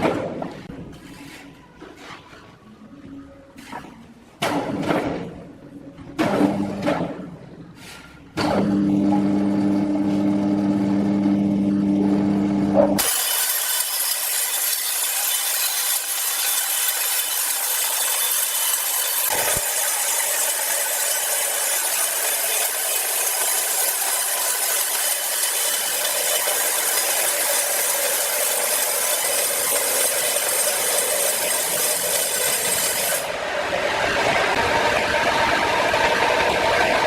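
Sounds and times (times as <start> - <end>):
power saw cutting log: 13.0 - 33.4.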